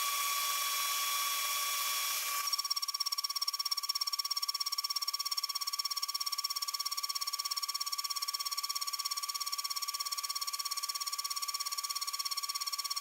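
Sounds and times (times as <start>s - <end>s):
milling spindle whine: 0.0s - 2.6s.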